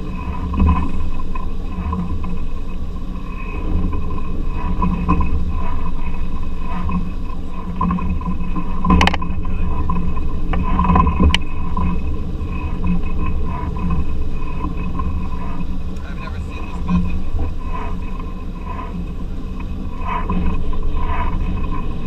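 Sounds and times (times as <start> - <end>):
boat engine low rumble: 0.0 - 22.0.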